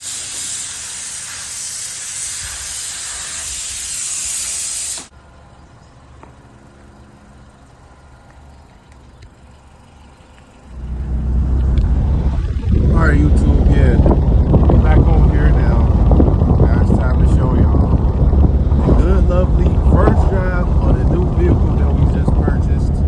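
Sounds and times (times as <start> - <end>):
loud steady hiss: 0.0 - 5.3
faint low hum: 5.2 - 23.0
loud low rumble: 10.7 - 23.0.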